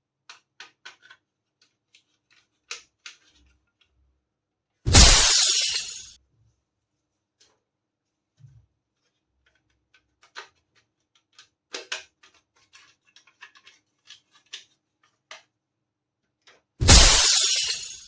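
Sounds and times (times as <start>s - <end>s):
toy kitchen pieces clicking: 0.2s - 4.0s, 9.1s - 15.6s, 16.2s - 18.0s.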